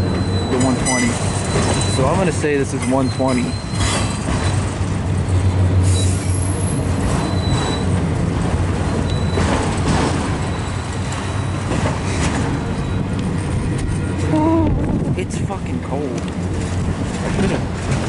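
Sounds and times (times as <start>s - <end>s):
high wheel squeals: 0.0s - 4.8s, 5.4s - 8.0s, 8.7s - 14.4s
freight cars rumbling on rails: 0.0s - 18.0s.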